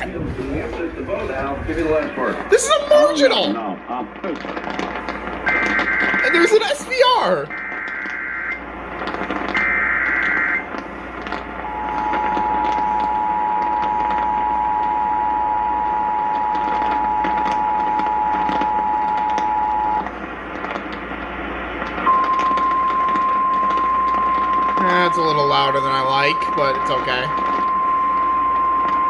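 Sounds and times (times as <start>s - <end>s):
radio hiss: 0.0s - 29.0s
screechy data burst: 4.4s - 29.0s
two-tone attention signal: 11.6s - 20.0s, 22.1s - 29.0s.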